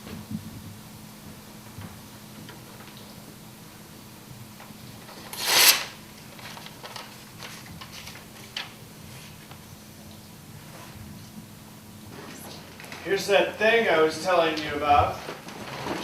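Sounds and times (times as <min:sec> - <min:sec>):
soft rustles and clicks: 0:06.2 - 0:11.4.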